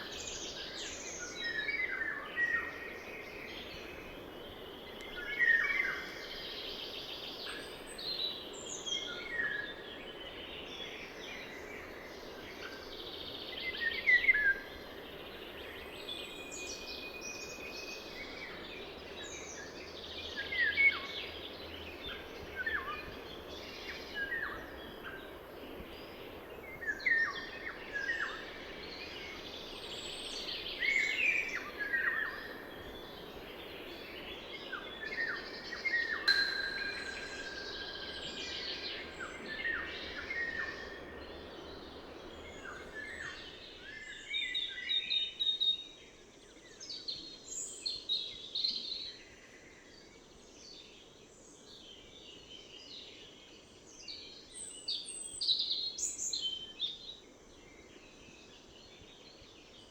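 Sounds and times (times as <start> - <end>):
songbirds singing: 13.1 - 45.8.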